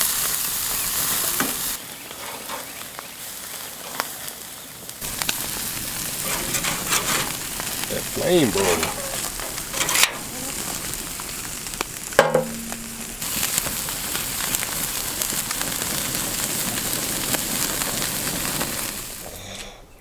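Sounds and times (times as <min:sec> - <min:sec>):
patties sizzling on a grill: 0:00.0 - 0:19.6
fire crackling: 0:02.8 - 0:19.4
sharp knocks: 0:12.2 - 0:13.2.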